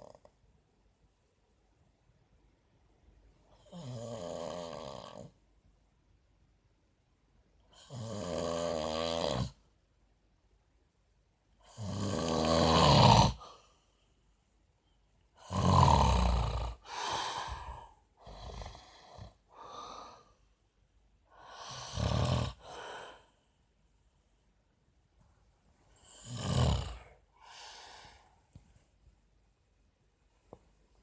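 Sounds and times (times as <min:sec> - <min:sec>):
man snoring: 0:03.5 - 0:05.4, 0:07.7 - 0:09.6, 0:11.6 - 0:13.5, 0:15.4 - 0:20.3, 0:21.4 - 0:23.2, 0:26.0 - 0:27.8.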